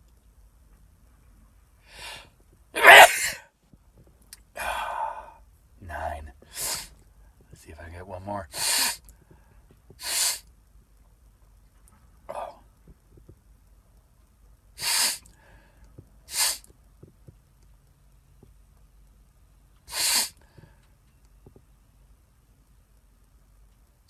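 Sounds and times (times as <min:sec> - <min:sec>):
sharp nasal sniffs: 0:02.8 - 0:03.4, 0:06.5 - 0:06.9, 0:08.6 - 0:09.0, 0:10.0 - 0:10.4, 0:14.8 - 0:15.3, 0:16.3 - 0:16.7, 0:19.9 - 0:20.4.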